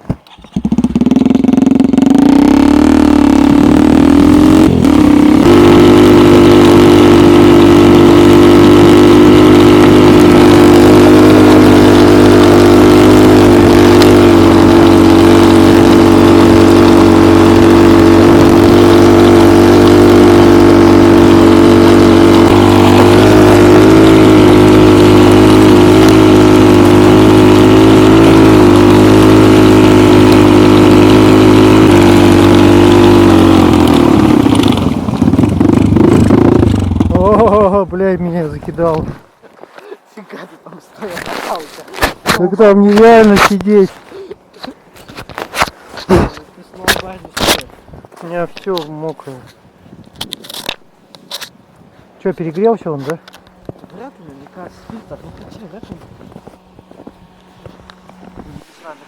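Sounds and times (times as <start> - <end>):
track driving through snow: 0.0 - 39.3, 40.8 - 51.5, 52.3 - 59.0
snowmobile engine revving: 0.2 - 39.1, 41.0 - 44.8.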